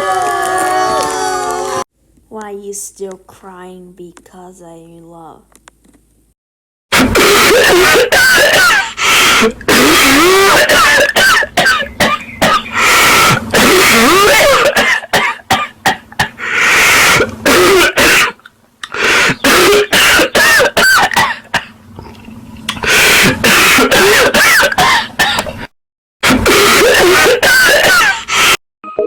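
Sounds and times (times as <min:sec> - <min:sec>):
monkey hiccuping: 0:06.9 - 0:22.2.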